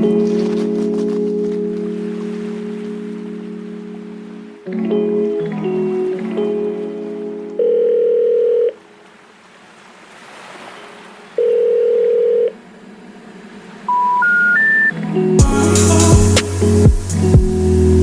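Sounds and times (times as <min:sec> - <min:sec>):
telephone ringing tone: 0:07.6 - 0:08.8, 0:11.4 - 0:12.6
rising three-tone beeps: 0:13.9 - 0:15.0
music with drums: 0:15.4 - 0:17.7.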